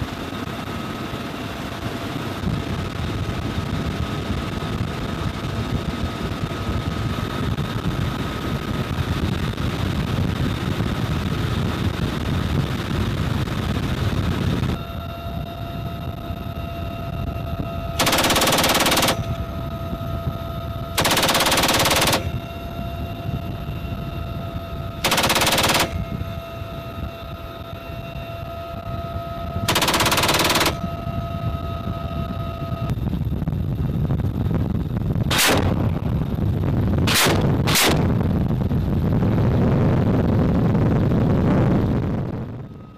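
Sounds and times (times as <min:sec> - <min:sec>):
helicopter turbine and rotor whine: 0:00.0 - 0:42.9
machine gun firing bursts: 0:18.0 - 0:19.4, 0:21.0 - 0:22.4, 0:25.0 - 0:26.0, 0:29.7 - 0:30.8, 0:35.3 - 0:35.8, 0:37.1 - 0:38.1.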